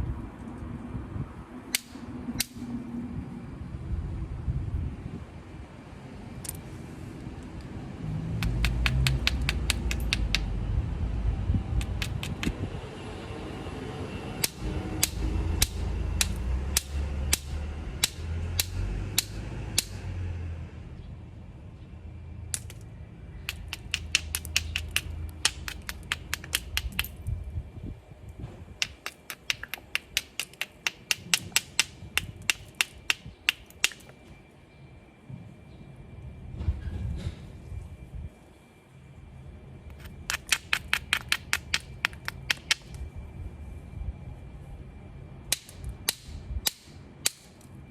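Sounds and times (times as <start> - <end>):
low rumble: 7.6 - 28.8
stone knapping glassy clicks: 8.4 - 10.5, 11.8 - 12.6, 14.4 - 20.0, 22.5 - 22.9, 23.5 - 27.2, 28.8 - 34.2, 39.9 - 43.0.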